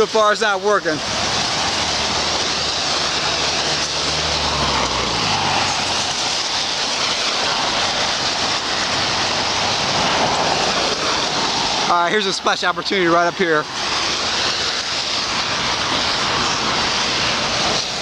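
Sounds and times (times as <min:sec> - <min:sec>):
tyres hissing on wet pavement: 0:00.0 - 0:18.0
passing vehicle engine hum: 0:01.0 - 0:11.9.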